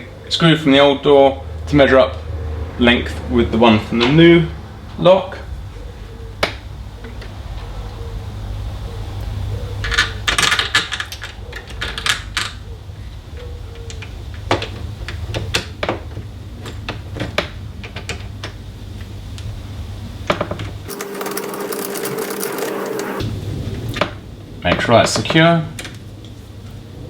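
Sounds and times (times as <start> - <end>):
short steady whirr: 20.9 - 23.2.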